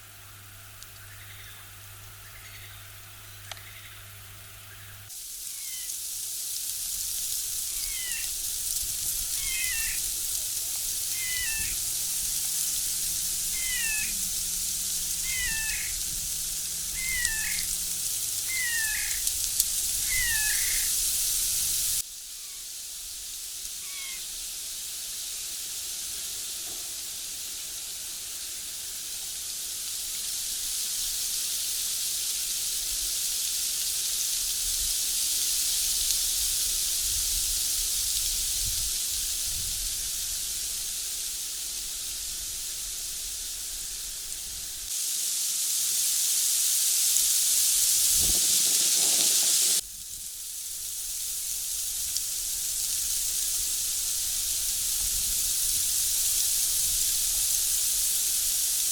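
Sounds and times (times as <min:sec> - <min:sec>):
steady high-pitched hiss: 0:00.0 - 0:58.9.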